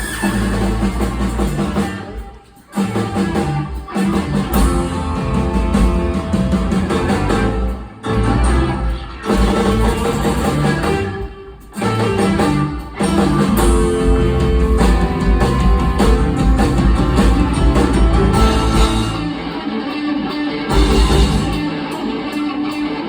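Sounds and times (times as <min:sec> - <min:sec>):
electric guitar: 0:00.0 - 0:23.0
live rock band playing: 0:00.0 - 0:23.0.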